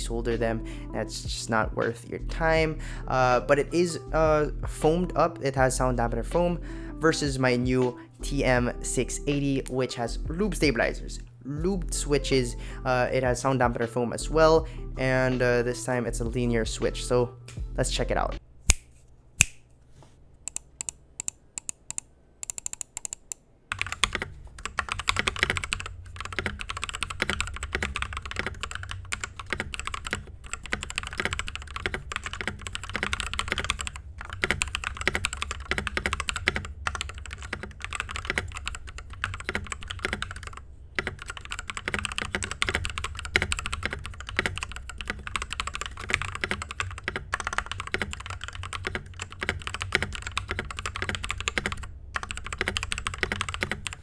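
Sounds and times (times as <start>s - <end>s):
mechanical keyboard typing: 20.5s - 54.0s.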